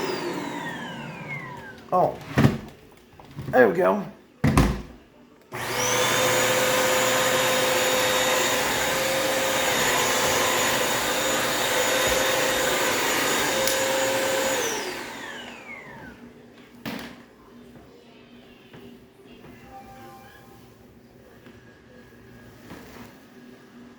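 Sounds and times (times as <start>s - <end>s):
vacuum cleaner motor whining: 0.0s - 2.5s, 5.5s - 16.4s.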